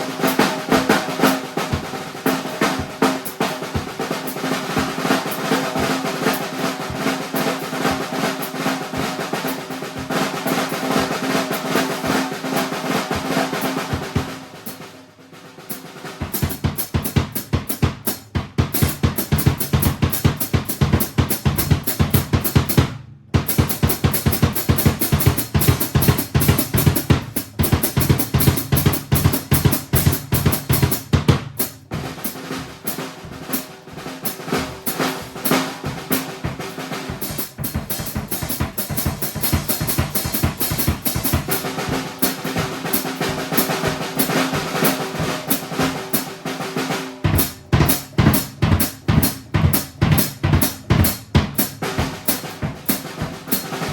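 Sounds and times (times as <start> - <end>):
drum kit solo: 0.0 - 53.9
bass drum: 16.1 - 53.9.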